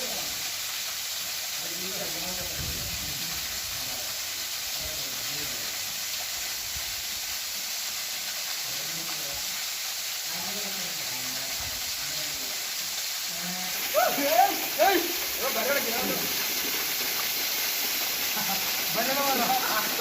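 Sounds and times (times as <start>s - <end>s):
waterfall rushing: 10.2s - 20.0s.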